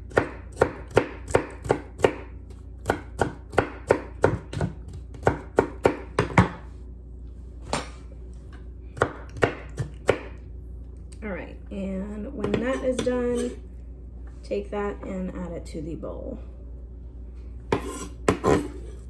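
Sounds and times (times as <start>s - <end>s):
knife chopping on cutting board: 0.1s - 6.6s, 9.0s - 10.4s, 17.7s - 18.8s.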